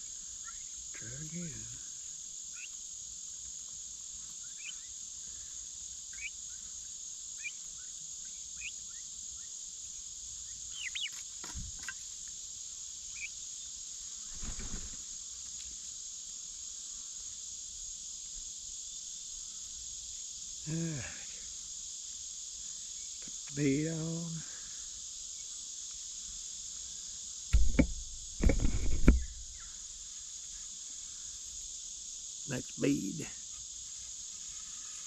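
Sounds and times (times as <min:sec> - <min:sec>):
insects chorus: 0:00.0 - 0:35.0
soft low rustle: 0:27.6 - 0:29.6.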